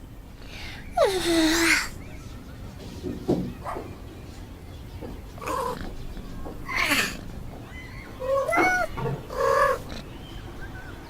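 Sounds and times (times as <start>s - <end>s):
cat meowing: 6.6s - 10.0s.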